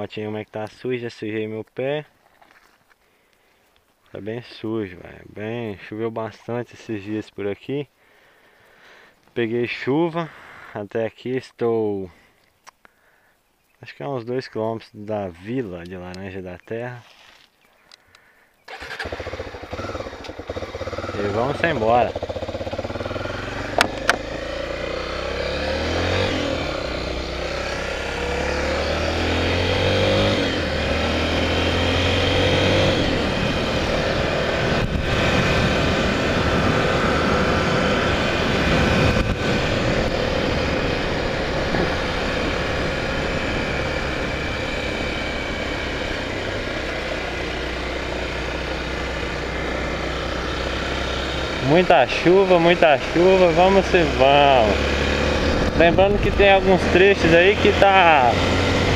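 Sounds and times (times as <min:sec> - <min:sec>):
motorcycle engine accelerating: 0:18.7 - 0:58.9
wind noise: 0:32.8 - 0:43.7.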